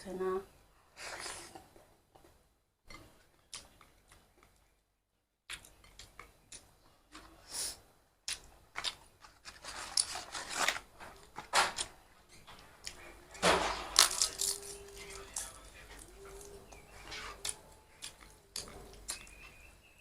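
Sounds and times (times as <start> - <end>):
chewing and mouth noises: 2.2 - 4.7, 5.5 - 7.4, 8.2 - 10.1, 14.0 - 19.6.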